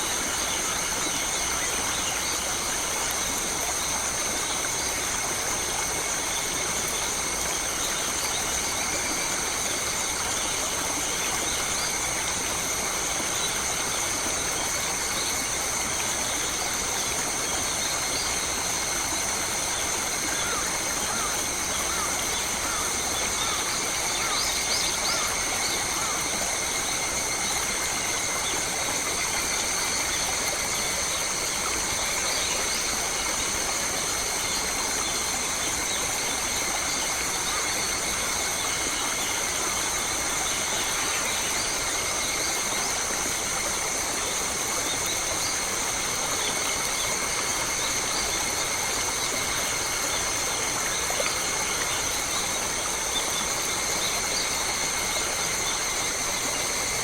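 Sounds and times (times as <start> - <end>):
stream water rushing: 0.0 - 57.0.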